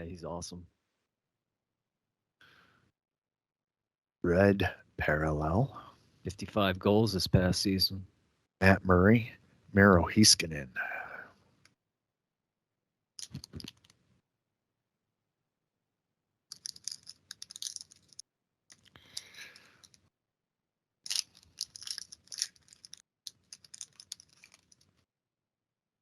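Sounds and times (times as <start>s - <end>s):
trading cards clicking and rustling: 13.2s - 14.0s, 16.5s - 20.0s, 21.1s - 25.0s.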